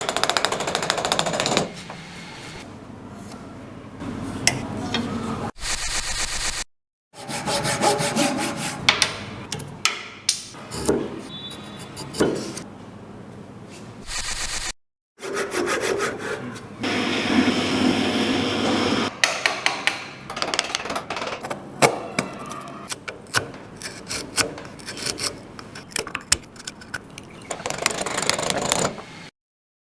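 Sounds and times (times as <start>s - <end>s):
sawing or rasping wood: 7.2s - 8.9s, 15.2s - 19.1s, 22.9s - 27.0s.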